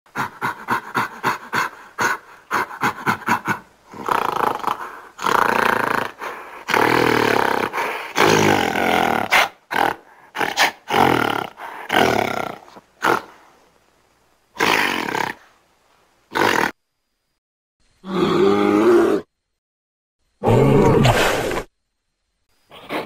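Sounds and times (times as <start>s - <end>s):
creature panting grunts: 0.1s - 8.6s, 9.2s - 13.4s
creature growling roars: 2.8s - 13.3s, 18.0s - 19.3s, 20.4s - 21.6s.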